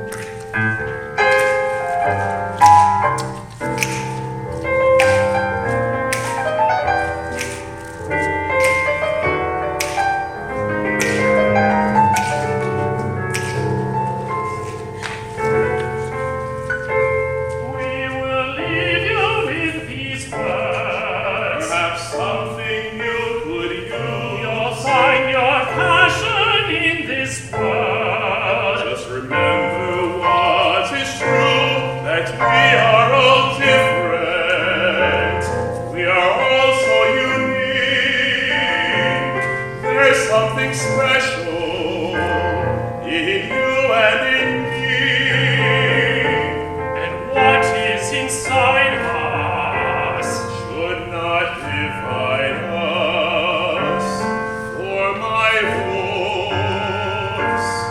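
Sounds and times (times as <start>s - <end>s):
light percussion: 0.0s - 18.0s
piano: 0.0s - 57.9s
opera singing: 17.5s - 57.9s.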